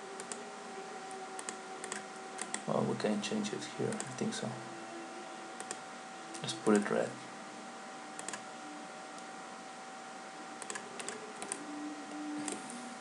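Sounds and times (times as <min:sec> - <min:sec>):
faint electrical hum: 0:00.0 - 0:13.0
computer clicks: 0:00.2 - 0:00.4, 0:01.1 - 0:02.7, 0:03.9 - 0:04.3, 0:05.6 - 0:07.0, 0:08.2 - 0:08.5, 0:10.6 - 0:11.6.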